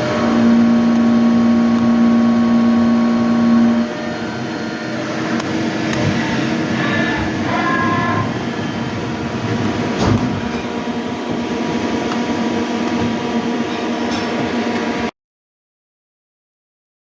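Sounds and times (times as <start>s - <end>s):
lathe running with mechanical hum: 0.0s - 15.1s
machine knock: 8.2s - 12.3s.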